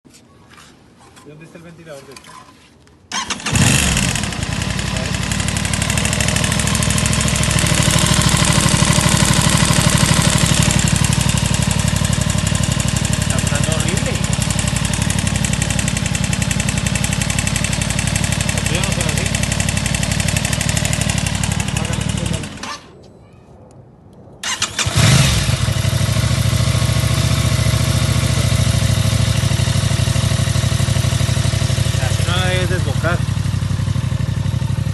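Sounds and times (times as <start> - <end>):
engine knocking noise: 3.5 - 22.6
motorcycle engine idling: 3.5 - 22.7, 24.4 - 34.9.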